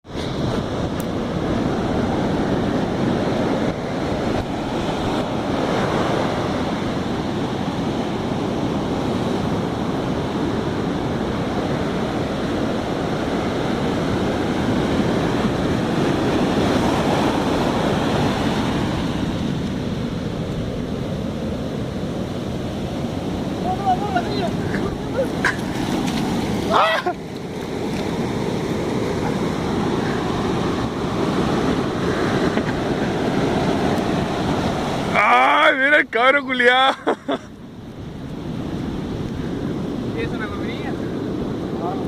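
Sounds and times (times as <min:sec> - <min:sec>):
wind on microphone: 0:00.0 - 0:35.2
sea surf washing in: 0:00.0 - 0:42.0.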